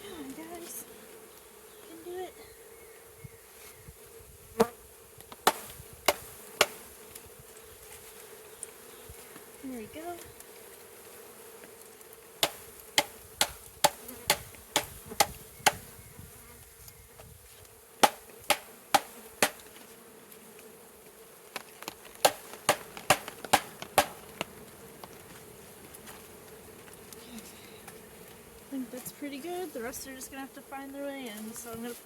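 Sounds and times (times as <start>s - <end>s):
bees humming: 0.0s - 32.0s
sharp knocks on package: 5.4s - 6.8s, 12.4s - 15.8s, 18.0s - 19.7s, 21.6s - 24.5s.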